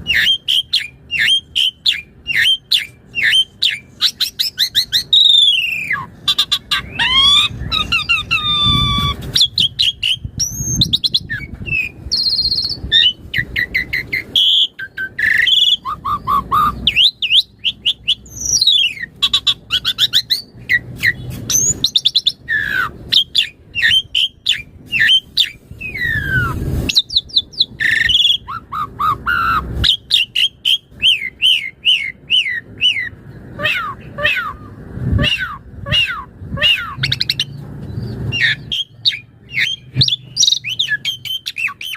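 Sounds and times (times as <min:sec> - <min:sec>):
starling singing: 0:00.0 - 0:41.9.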